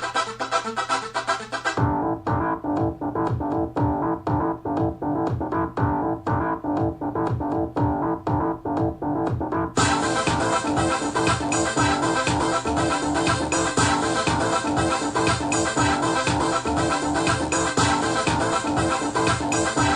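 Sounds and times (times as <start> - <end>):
electronic dance music on speaker: 0.0 - 19.9.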